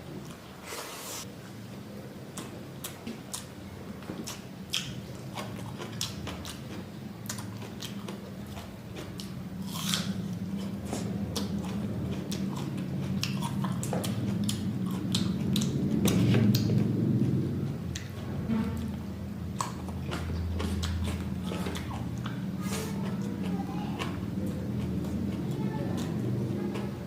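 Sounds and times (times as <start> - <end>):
low hum: 8.3 - 27.0
person biting and chewing food: 9.0 - 16.8.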